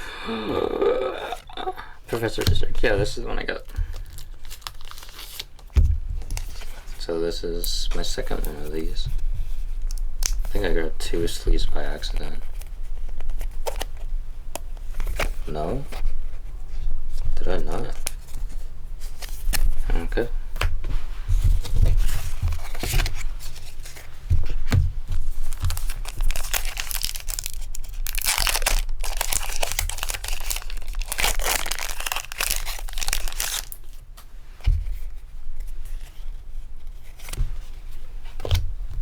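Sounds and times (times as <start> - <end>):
foil wrapper tearing and crinkling: 3.8 - 6.5, 25.4 - 34.0.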